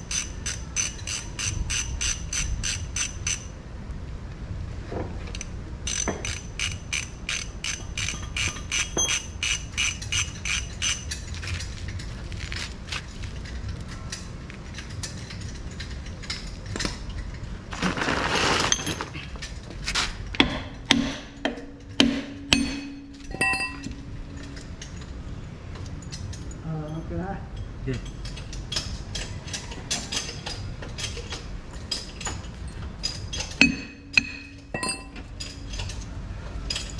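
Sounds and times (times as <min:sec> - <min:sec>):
metallic ratchet clicks: 0:00.0 - 0:03.5, 0:05.3 - 0:12.1
metal clanks and clinks: 0:05.3 - 0:36.9.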